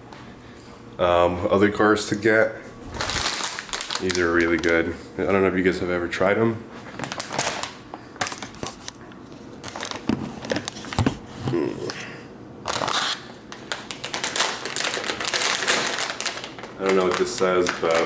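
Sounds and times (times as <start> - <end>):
plastic snack bag crinkling: 2.9 - 5.4, 7.0 - 9.0, 9.6 - 10.9, 12.7 - 18.0.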